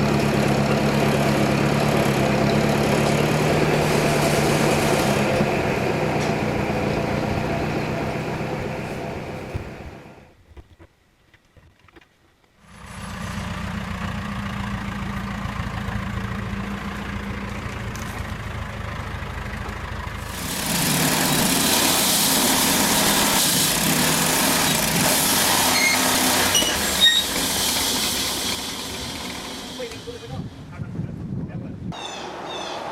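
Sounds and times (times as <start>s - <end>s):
saw cutting log: 0.0s - 10.1s, 20.2s - 30.4s
sawmill engine running: 0.0s - 10.3s, 12.7s - 30.8s.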